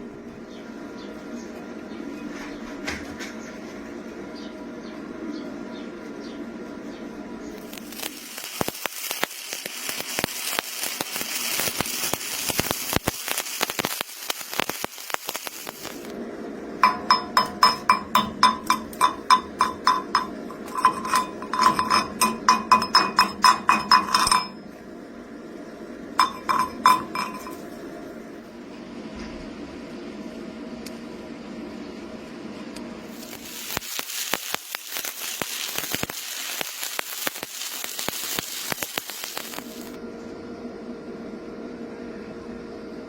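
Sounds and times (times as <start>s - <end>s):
welding arc crackling: 7.5s - 16.2s, 16.8s - 24.6s, 26.2s - 27.8s, 33.0s - 40.0s
hammer striking metal: 16.8s - 24.6s, 26.2s - 27.6s.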